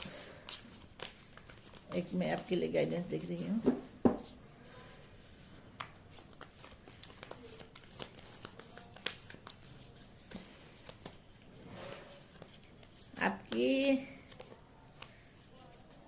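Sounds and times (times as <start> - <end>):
playing cards rustling: 0.0 - 3.6, 5.0 - 16.0.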